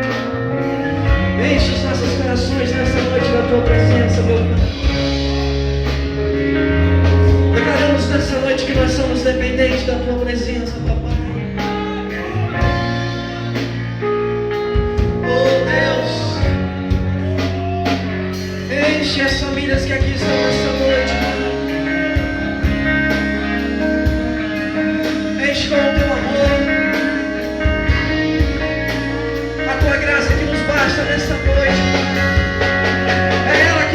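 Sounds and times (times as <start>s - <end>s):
drums keeping steady beat: 0.0s - 10.1s, 10.7s - 33.9s
worship band playing: 0.0s - 33.9s
person singing: 15.0s - 33.9s.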